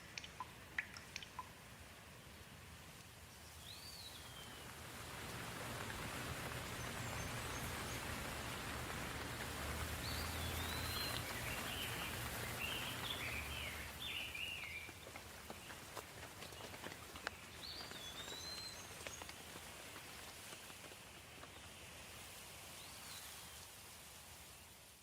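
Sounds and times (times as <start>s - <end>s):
single drips: 0.0s - 1.6s
soft rain hissing: 0.0s - 25.0s
bird chirping: 10.0s - 15.0s.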